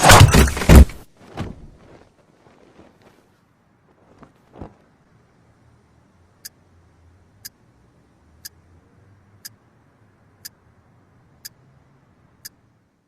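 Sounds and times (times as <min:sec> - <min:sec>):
clock ticking: 0:07.4 - 0:07.6, 0:08.4 - 0:08.6.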